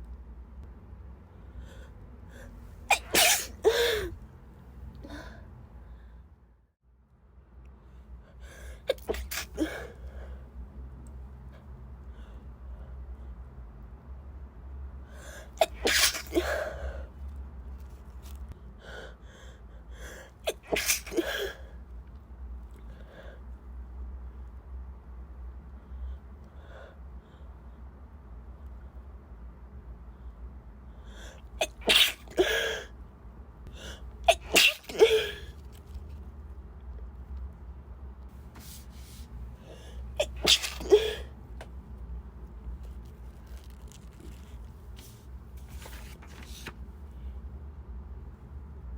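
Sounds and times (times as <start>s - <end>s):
woman sneezing: 2.9s - 4.2s, 8.9s - 9.9s, 15.6s - 16.6s, 20.5s - 21.6s, 31.6s - 32.8s, 34.3s - 35.5s, 40.2s - 41.3s.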